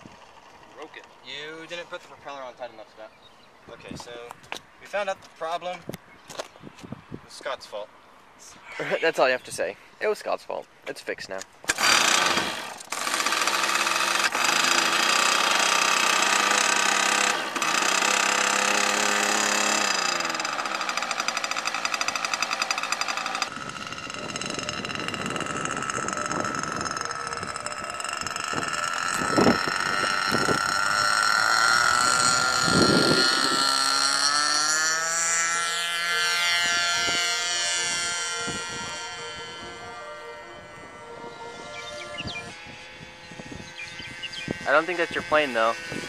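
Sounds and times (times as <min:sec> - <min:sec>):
model airplane engine buzzing: 0:11.6 - 0:46.0.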